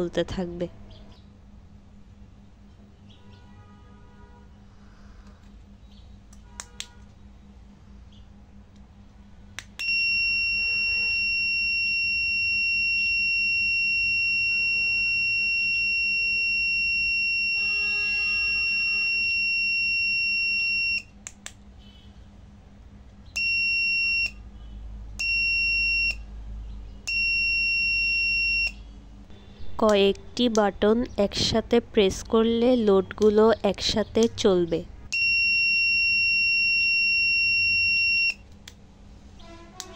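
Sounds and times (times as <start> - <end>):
electronic buzzer tone: 9.8 - 21.2, 23.4 - 24.5, 25.2 - 26.3, 27.1 - 29.9, 35.1 - 38.4.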